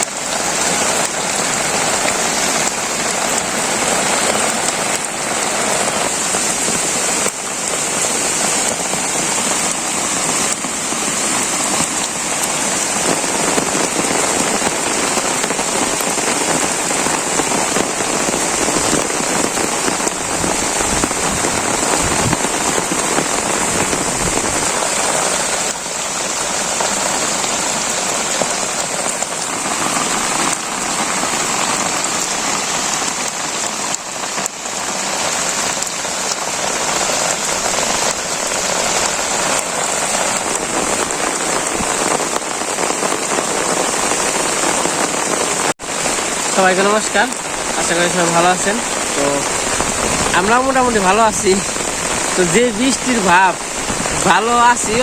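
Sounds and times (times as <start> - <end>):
heavy rain falling: 0.0 - 55.0.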